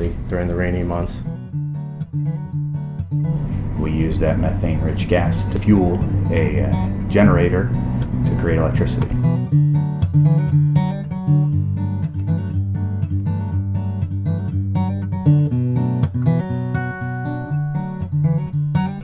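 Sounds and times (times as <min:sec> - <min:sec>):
acoustic guitar music: 0:00.0 - 0:19.0
low bass line: 0:03.3 - 0:09.5.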